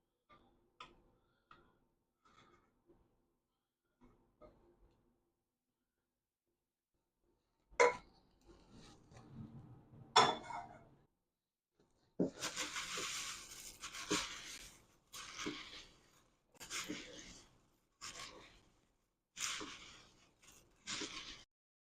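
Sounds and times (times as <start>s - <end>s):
crunchy rustling of stirred flakes: 12.2s - 21.5s.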